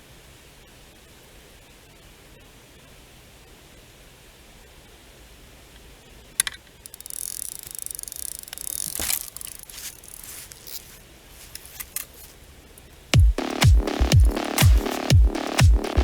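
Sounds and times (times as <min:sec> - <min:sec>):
fishing reel ratcheting clicks: 0:06.8 - 0:10.2.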